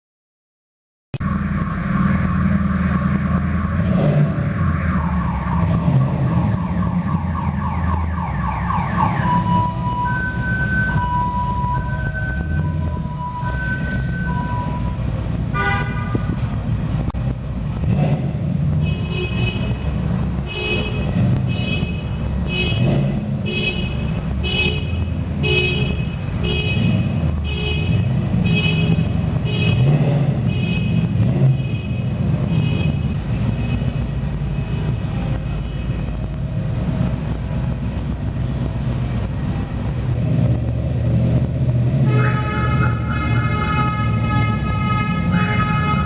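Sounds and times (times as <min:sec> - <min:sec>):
car horn honking: 0:10.8 - 0:16.4, 0:20.5 - 0:33.9, 0:42.0 - 0:46.0.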